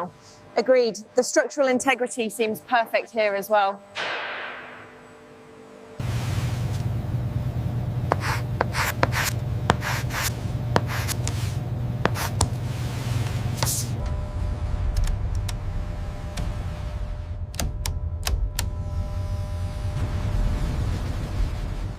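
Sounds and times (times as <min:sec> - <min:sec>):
low mechanical hum: 0:00.0 - 0:21.9
rubbing and scraping: 0:08.1 - 0:14.0.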